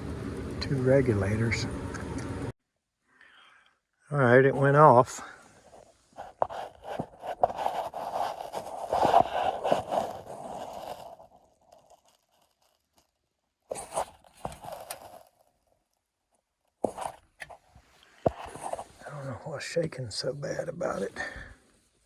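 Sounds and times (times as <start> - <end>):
gas furnace rattling: 0.0 - 2.5.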